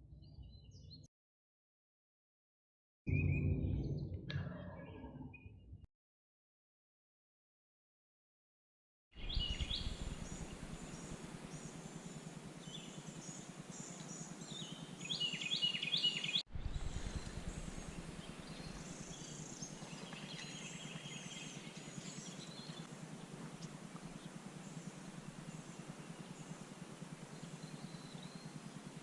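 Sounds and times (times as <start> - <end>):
songbirds chirping: 9.2 - 29.0
background hiss: 9.3 - 29.0.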